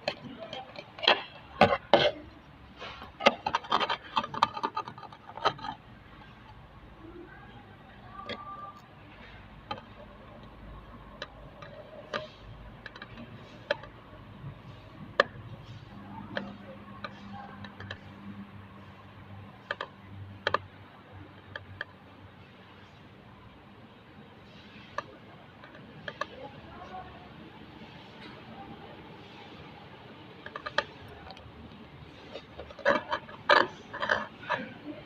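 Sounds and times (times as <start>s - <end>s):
small parts and tools clicking: 0.0s - 6.6s, 8.1s - 18.9s, 19.6s - 21.9s, 24.4s - 27.0s, 30.4s - 34.7s.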